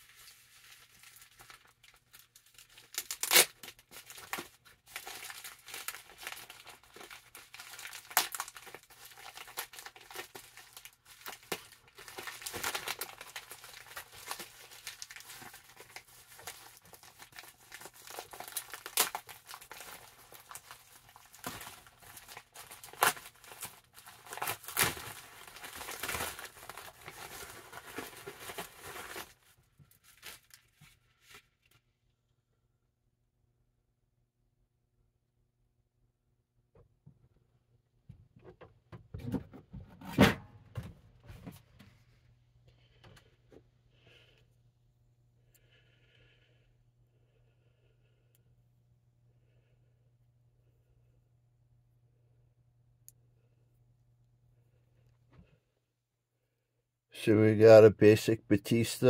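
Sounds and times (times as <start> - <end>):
plastic and cardboard crinkling: 0.0 - 31.8
packaging snapping: 2.7 - 29.3.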